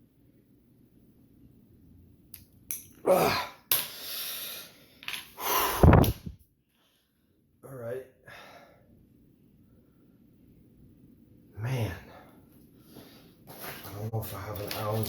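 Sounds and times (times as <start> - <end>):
man breathing out hard: 5.4 - 6.0.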